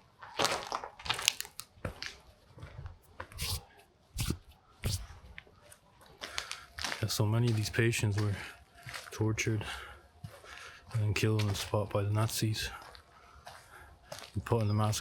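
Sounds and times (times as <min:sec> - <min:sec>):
footsteps crunching on rubble: 0:00.0 - 0:15.0.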